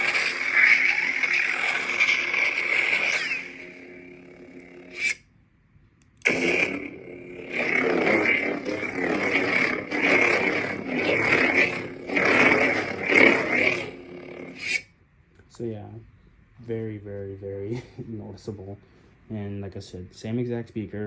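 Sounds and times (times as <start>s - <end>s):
lightsaber hum: 0.0s - 5.2s, 6.2s - 14.9s
lightsaber igniting: 0.0s - 5.2s, 6.2s - 14.9s
lightsaber swing sounds: 7.4s - 14.8s.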